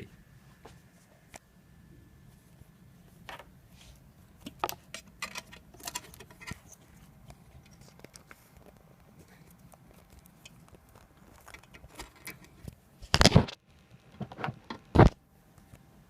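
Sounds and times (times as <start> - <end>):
faint low hum: 0.0 - 16.0
small clicks and rattles: 4.4 - 14.8.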